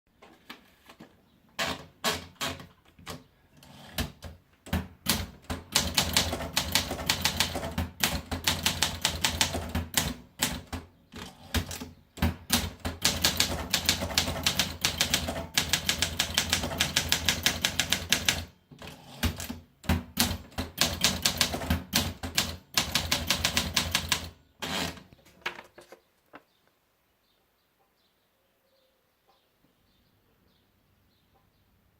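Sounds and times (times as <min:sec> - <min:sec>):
manual typewriter key strikes: 0:04.0 - 0:18.5, 0:19.2 - 0:25.0.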